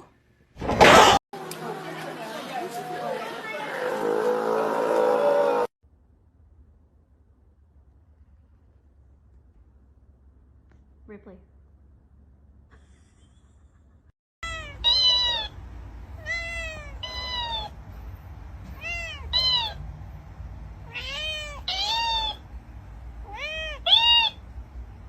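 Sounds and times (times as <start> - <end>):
cat meowing: 14.4 - 17.8, 18.7 - 19.8, 20.8 - 22.4, 23.2 - 24.4.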